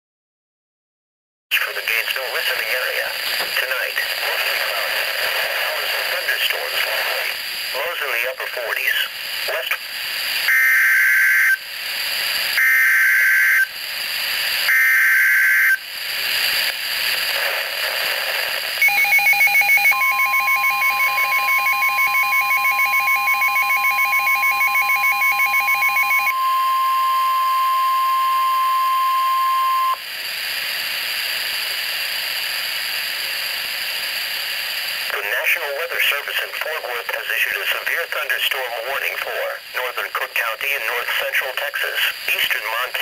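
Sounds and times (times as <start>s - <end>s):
radio static: 1.5s - 10.5s, 15.5s - 30.0s, 34.9s - 43.0s
radio hiss: 1.5s - 43.0s
steady alarm tone: 10.5s - 11.7s, 12.6s - 13.7s, 14.6s - 15.8s, 18.8s - 30.0s.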